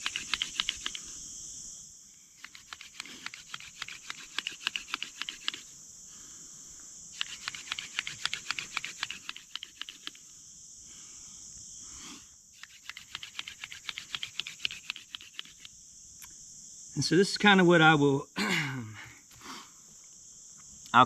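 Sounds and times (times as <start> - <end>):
high insect drone: 0.0 - 21.0
spindle scratching in fireboard: 12.6 - 15.7.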